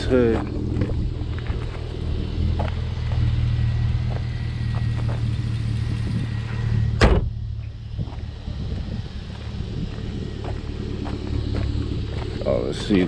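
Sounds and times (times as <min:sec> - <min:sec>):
car engine idling: 0:00.0 - 0:13.0
car hood slamming: 0:06.9 - 0:07.4.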